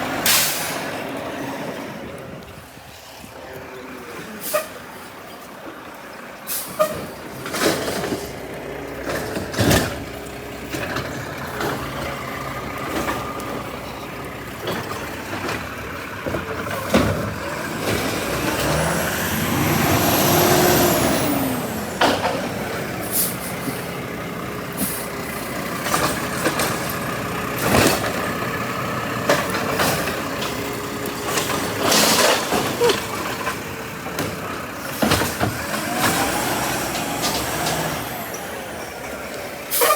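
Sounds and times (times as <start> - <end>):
garbage truck running: 0.0 - 39.9
air brake hisses: 0.2 - 0.9, 6.5 - 7.0, 23.0 - 23.8, 24.8 - 25.1.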